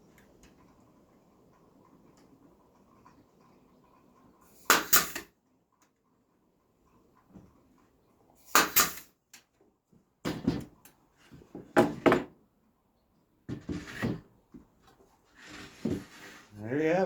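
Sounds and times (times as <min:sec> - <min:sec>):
wooden knocks and clatter: 0:10.2 - 0:12.4, 0:13.5 - 0:16.4.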